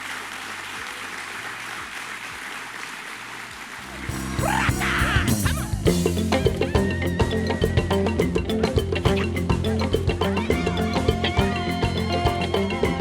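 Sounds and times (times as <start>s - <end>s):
applause: 0.0s - 4.6s
celebratory music with drums and bass: 3.8s - 13.0s.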